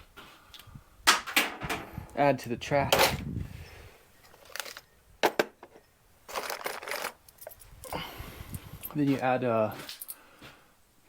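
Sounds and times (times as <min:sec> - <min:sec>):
metal parts rattling: 0:04.2 - 0:04.9, 0:06.3 - 0:08.1.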